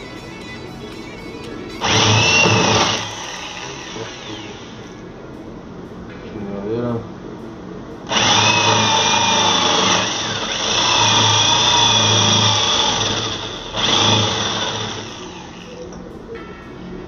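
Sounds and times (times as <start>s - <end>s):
power tool cutting wood: 1.4s - 5.0s, 8.1s - 15.8s.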